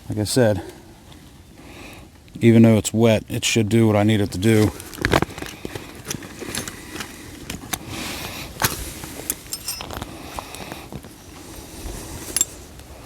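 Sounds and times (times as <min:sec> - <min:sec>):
fire starter clicks and scrapes: 0:04.4 - 0:12.9
high metallic ringing: 0:09.3 - 0:10.0, 0:12.3 - 0:12.7.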